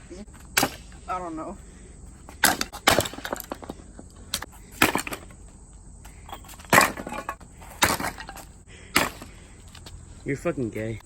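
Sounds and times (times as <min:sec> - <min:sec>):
sledgehammer striking wood: 0:00.5 - 0:01.0, 0:02.4 - 0:03.7, 0:04.8 - 0:05.3, 0:06.6 - 0:09.4.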